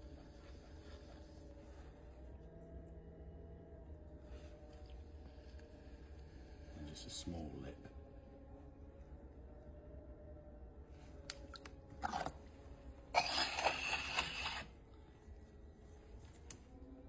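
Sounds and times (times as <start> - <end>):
wet clay scraping and rubbing: 11.3 - 12.5, 13.2 - 14.7.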